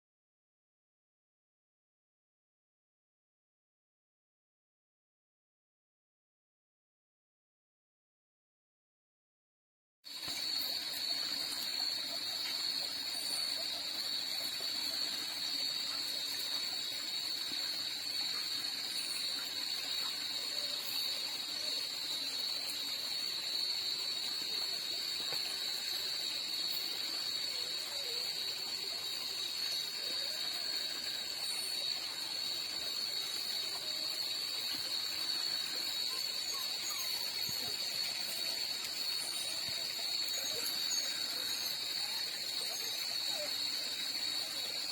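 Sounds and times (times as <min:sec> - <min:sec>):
crickets ringing drone: 0:10.1 - 0:44.9.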